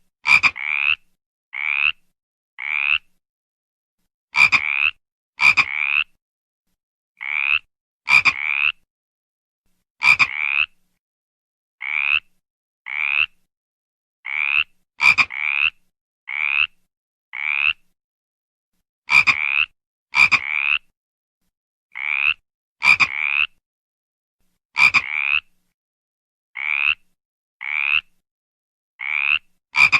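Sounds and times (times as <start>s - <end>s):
frog croaking: 0.3s - 1.0s, 1.6s - 2.0s, 2.6s - 3.1s, 4.4s - 6.1s, 7.2s - 8.8s, 10.0s - 10.8s, 11.8s - 12.3s, 12.9s - 13.4s, 14.3s - 16.8s, 17.4s - 17.8s, 19.1s - 20.9s, 21.9s - 23.6s, 24.8s - 25.5s, 26.6s - 27.0s, 27.6s - 28.1s, 29.0s - 29.9s.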